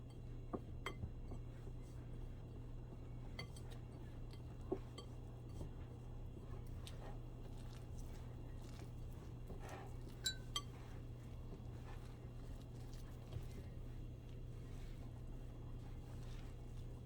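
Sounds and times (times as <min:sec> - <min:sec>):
utensil clinking against mixing bowl: 0:10.1 - 0:10.8.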